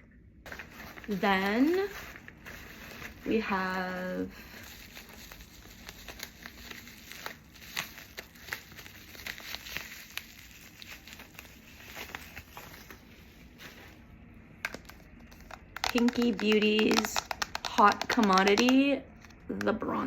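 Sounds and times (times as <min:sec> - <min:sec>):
packaging rustling and crinkling: 0:00.5 - 0:19.4
small clicks and taps: 0:14.6 - 0:19.8.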